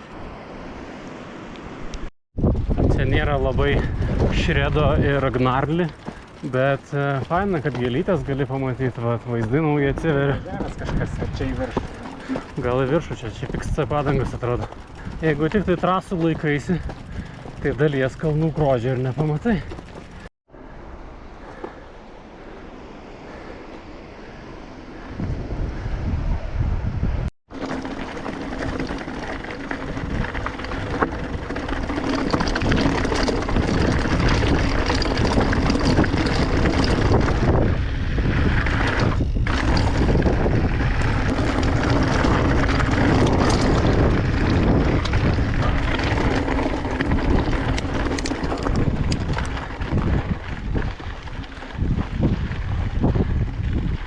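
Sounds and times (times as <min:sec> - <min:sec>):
wind buffeting microphone: 0:01.9 - 0:20.3, 0:24.9 - 0:27.3, 0:28.3 - 0:54.0
bike rattling and clicking: 0:03.0 - 0:20.3, 0:27.5 - 0:54.0.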